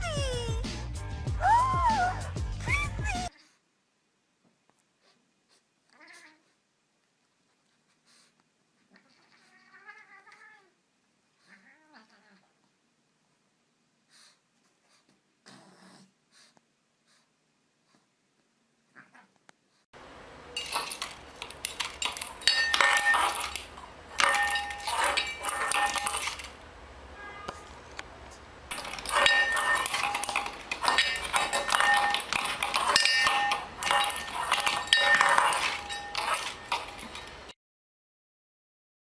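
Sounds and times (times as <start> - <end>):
hard objects clinking and clattering: 20.5 - 26.7, 28.7 - 37.5.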